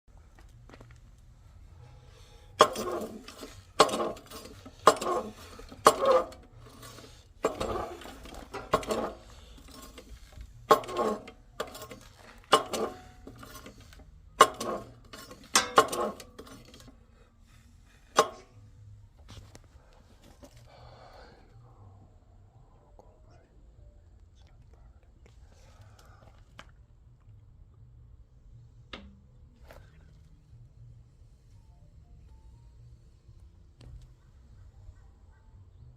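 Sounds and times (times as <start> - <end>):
metallic clanks ringing: 2.6 - 16.9.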